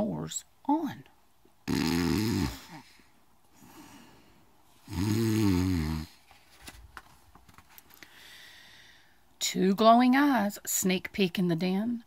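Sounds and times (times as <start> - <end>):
woman imitating a snore: 1.6 - 2.9, 4.9 - 6.2.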